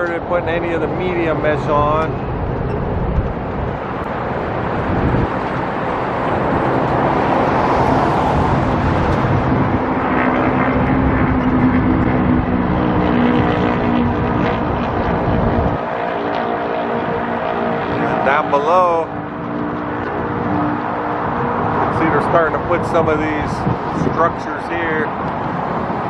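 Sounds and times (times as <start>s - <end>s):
vehicle engine passing by: 0.0s - 26.0s
wind buffeting microphone: 0.0s - 26.0s.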